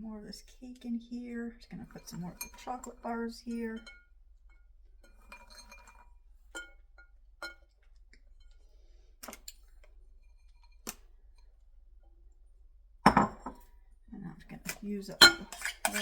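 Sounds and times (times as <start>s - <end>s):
spoon clinking glass bowl: 2.1s - 3.0s, 5.0s - 7.6s, 15.2s - 16.0s.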